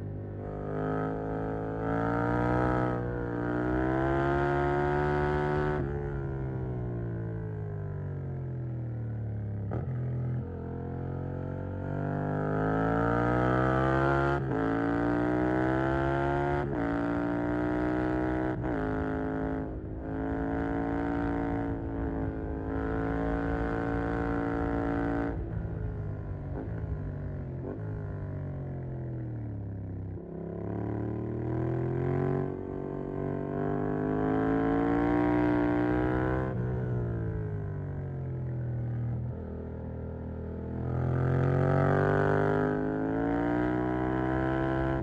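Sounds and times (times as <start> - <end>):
motorcycle engine accelerating through gears: 0.0 - 45.0
engine revving on downshifts: 12.2 - 25.4, 30.7 - 36.6, 40.8 - 45.0.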